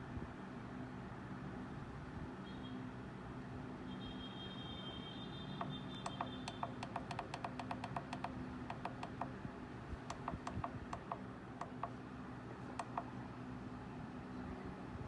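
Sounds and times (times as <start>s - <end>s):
light clicks: 5.6s - 9.3s, 10.1s - 12.0s, 12.7s - 13.1s.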